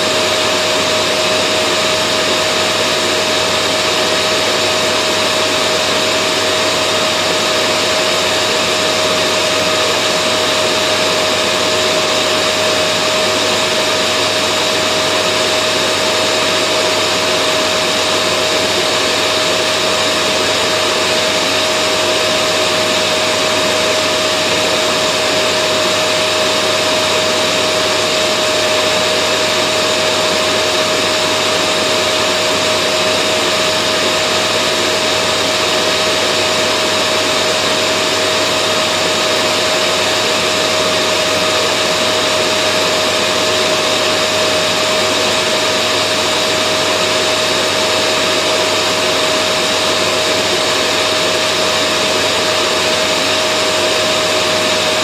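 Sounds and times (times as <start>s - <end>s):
vacuum cleaner running: 0.0s - 55.0s.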